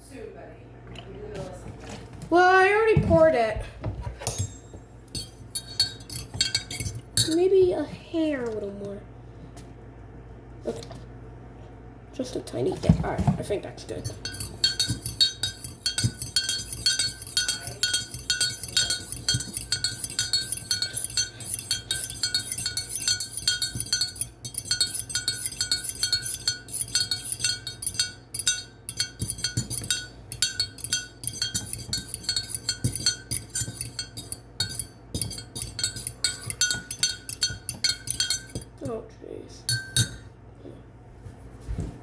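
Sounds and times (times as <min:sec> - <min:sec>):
metal spoon clinking in a mug: 0:04.2 - 0:07.4, 0:13.9 - 0:38.8, 0:39.7 - 0:40.3.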